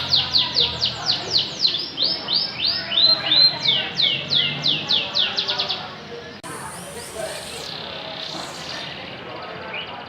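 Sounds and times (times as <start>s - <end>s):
canary singing: 6.4s - 10.0s.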